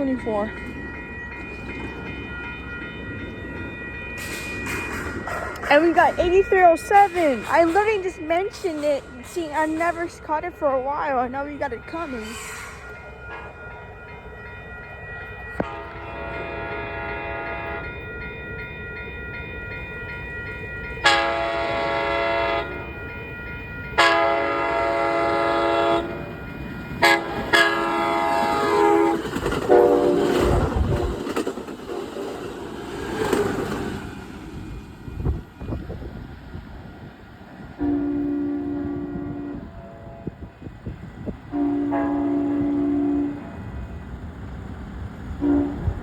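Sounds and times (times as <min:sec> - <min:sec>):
train wheel and rail noise: 0:00.0 - 0:46.0
train horn blasts: 0:15.6 - 0:17.9, 0:21.0 - 0:22.8, 0:24.0 - 0:26.2, 0:27.0 - 0:30.7, 0:37.8 - 0:40.6, 0:41.4 - 0:43.6, 0:45.4 - 0:46.0.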